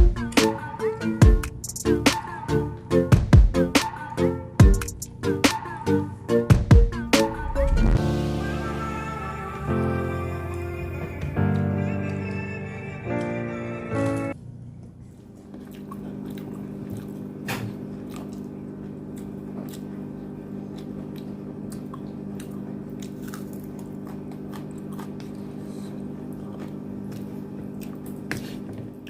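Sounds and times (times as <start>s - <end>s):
steady low hum: 4.3s - 11.7s
close-up chewing and biting: 15.4s - 28.7s.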